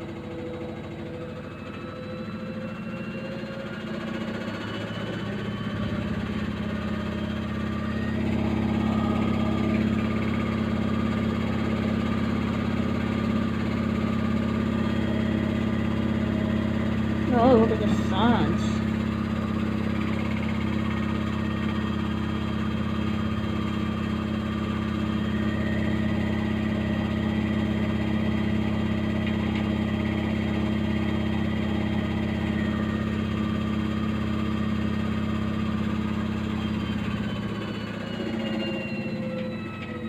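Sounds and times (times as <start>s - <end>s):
washing machine spinning: 0.0s - 40.0s.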